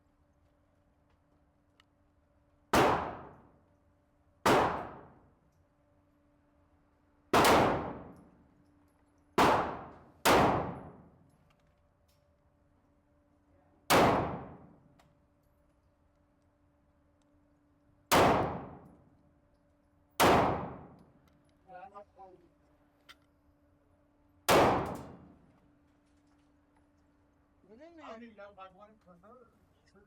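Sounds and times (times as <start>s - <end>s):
pistol shots: 2.7s - 3.4s, 4.4s - 5.2s, 7.3s - 8.2s, 9.4s - 11.0s, 13.9s - 14.7s, 18.1s - 18.9s, 20.2s - 21.0s, 24.5s - 25.3s.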